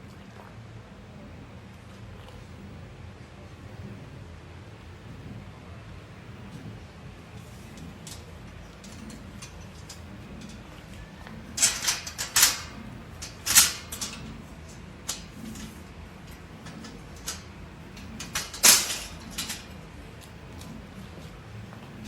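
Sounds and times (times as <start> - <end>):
metal dog kennel rattling: 7.5 - 21.3.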